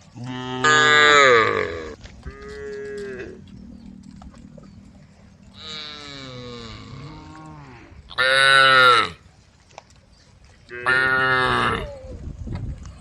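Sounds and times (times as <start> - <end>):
cattle mooing: 0.2 - 4.8, 5.4 - 9.2, 10.7 - 11.9.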